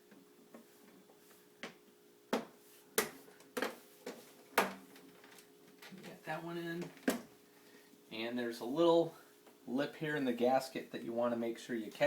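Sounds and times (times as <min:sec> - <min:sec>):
faint steady hum: 0:00.0 - 0:12.0.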